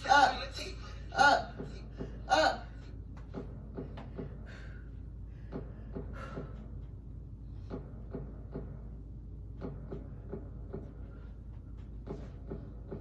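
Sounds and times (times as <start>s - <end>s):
faint background music: 0.0s - 13.0s
dull thumps and taps: 7.6s - 13.0s.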